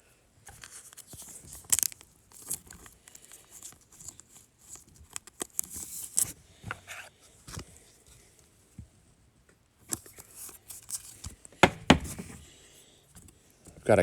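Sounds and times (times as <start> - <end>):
wrapper tearing and crinkling: 0.6 - 3.3.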